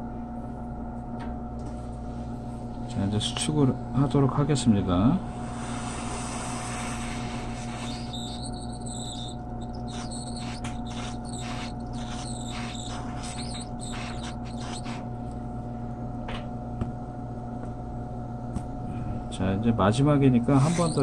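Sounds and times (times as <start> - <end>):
short hissing pulses: 5.3 - 15.0, 20.6 - 21.0
heat gun blowing: 5.3 - 15.1, 20.6 - 21.0.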